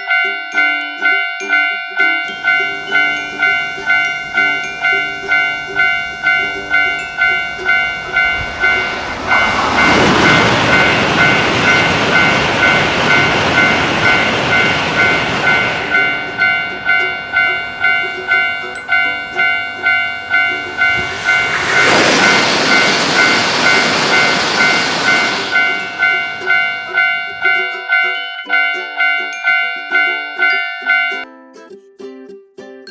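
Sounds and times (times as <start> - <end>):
railroad crossing bell dinging: 0.0 - 31.2
train rushing past: 2.2 - 28.2.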